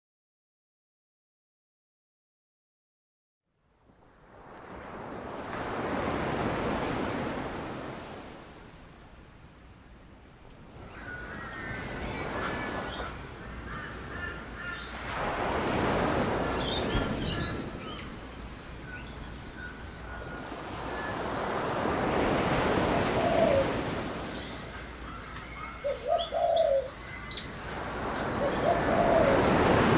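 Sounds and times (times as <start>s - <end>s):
ocean waves breaking: 4.3s - 9.0s, 10.6s - 25.3s, 27.4s - 29.9s
birds chirping: 15.9s - 29.9s.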